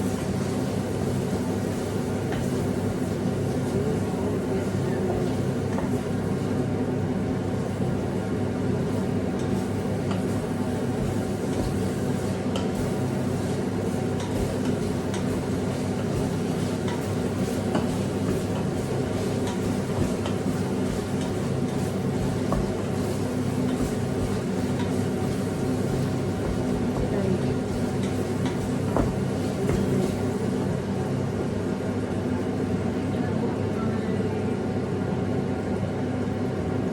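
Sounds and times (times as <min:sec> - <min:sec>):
extractor fan droning: 0:00.0 - 0:36.9.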